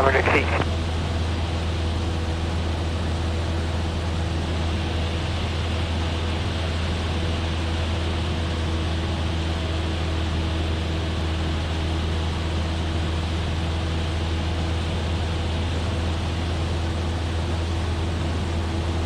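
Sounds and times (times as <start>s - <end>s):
faint steady tones: 0.0s - 2.0s
airplane engine and propeller drone: 0.0s - 19.0s.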